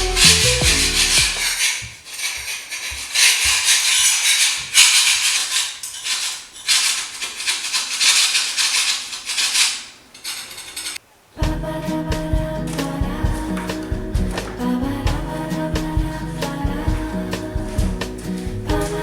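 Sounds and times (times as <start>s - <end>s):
shaker swishes: 0.0s - 1.9s, 11.4s - 19.0s
soft low thumps: 11.4s - 19.0s.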